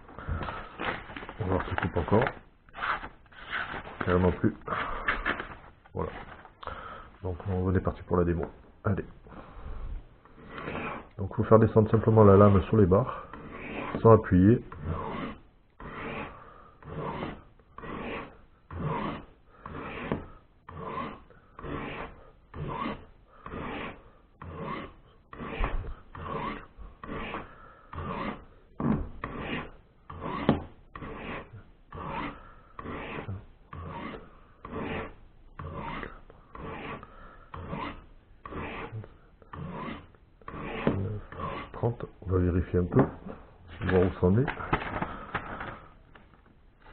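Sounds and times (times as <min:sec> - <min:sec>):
knife scraping on ceramic rods: 0:10.3 - 0:28.5, 0:29.2 - 0:42.1.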